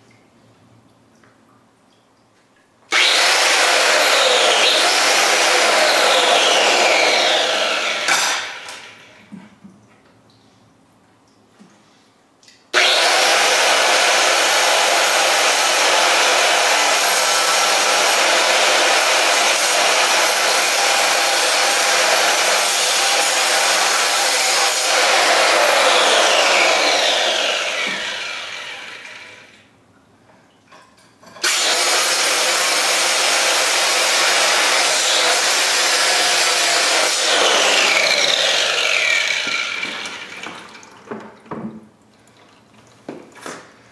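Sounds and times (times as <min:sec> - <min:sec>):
saw cutting concrete: 0:02.9 - 0:09.1, 0:12.8 - 0:29.5, 0:31.4 - 0:40.7.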